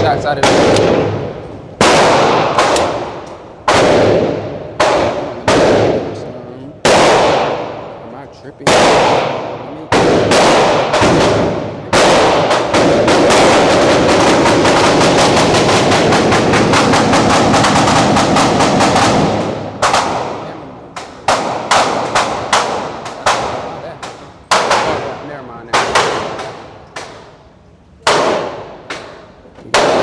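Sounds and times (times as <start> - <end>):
handgun gunshots: 0.4 - 6.1, 6.8 - 7.8, 8.7 - 25.2, 25.8 - 27.4, 28.0 - 30.0.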